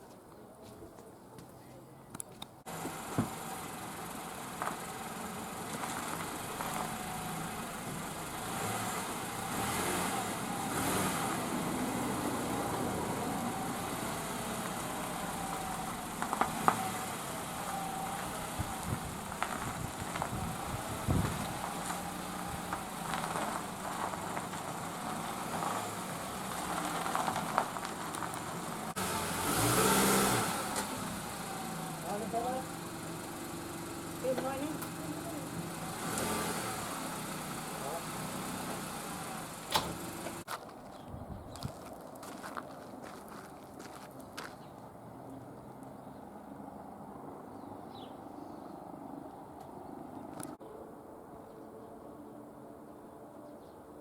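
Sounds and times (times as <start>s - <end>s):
vehicle engine running: 2.6s - 40.5s.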